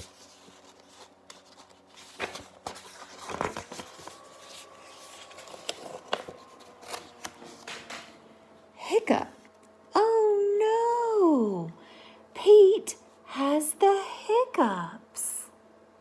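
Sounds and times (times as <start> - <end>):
book pages turning: 0.0 - 8.2.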